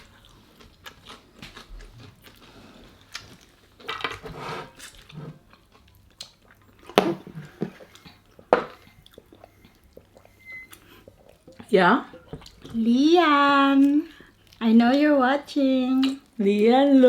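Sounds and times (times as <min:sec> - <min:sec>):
crunchy chewing: 0:00.0 - 0:11.4.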